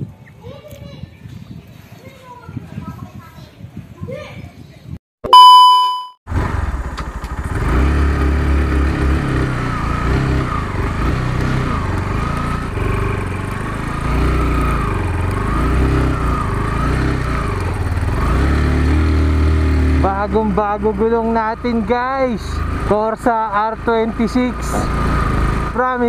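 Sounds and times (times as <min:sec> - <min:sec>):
motorcycle engine running: 0:06.3 - 0:26.0.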